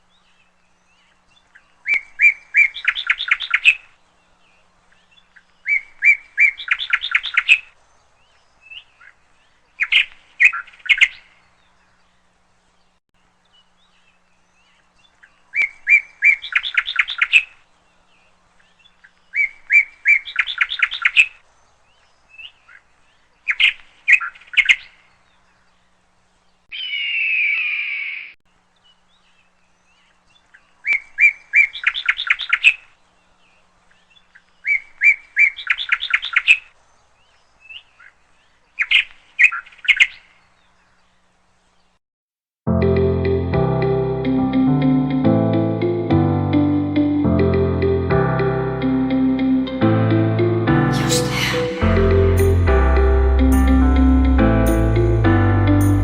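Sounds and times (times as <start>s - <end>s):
bird call with falling sweep: 50.7s - 56.0s
bird singing: 50.8s - 56.0s.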